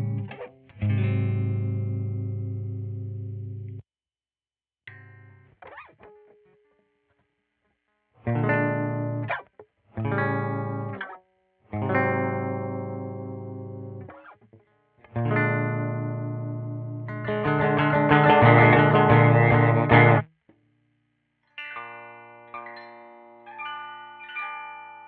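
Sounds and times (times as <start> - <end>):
electric guitar chords strummed: 0.0 - 3.8, 8.3 - 9.4, 10.0 - 14.3, 15.1 - 20.3, 21.6 - 23.7.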